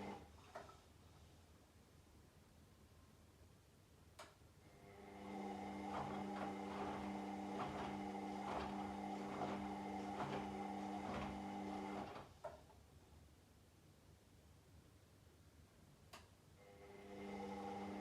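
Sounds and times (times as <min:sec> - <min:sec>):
washing machine motor whine: 0:00.0 - 0:00.3, 0:04.9 - 0:12.3, 0:16.8 - 0:18.0
laundry tumbling knocks: 0:05.8 - 0:12.2.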